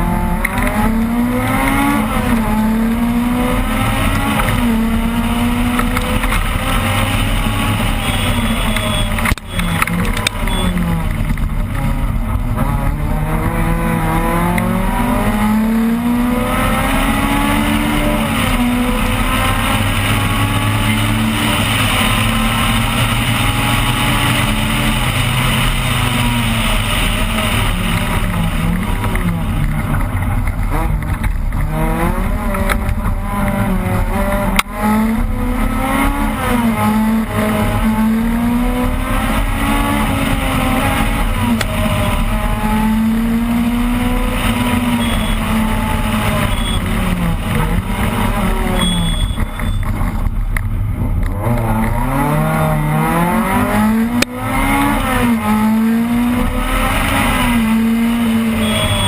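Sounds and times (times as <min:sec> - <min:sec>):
rally car engine revving: 0:00.0 - 0:59.0.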